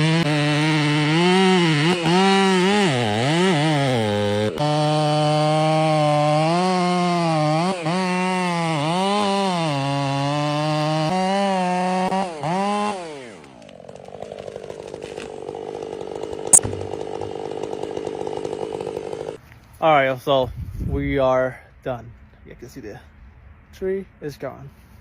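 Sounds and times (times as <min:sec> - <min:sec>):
chainsaw cutting wood: 0:00.0 - 0:19.4.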